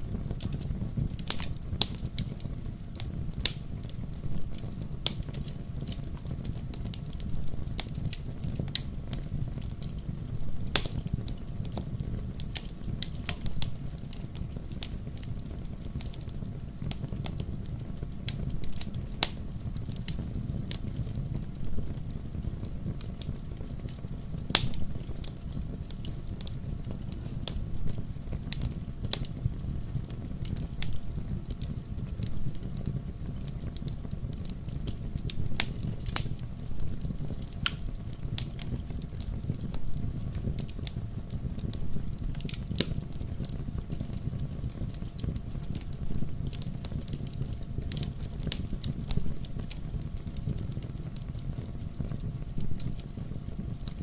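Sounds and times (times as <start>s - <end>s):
bonfire crackling and popping: 0.0s - 54.0s.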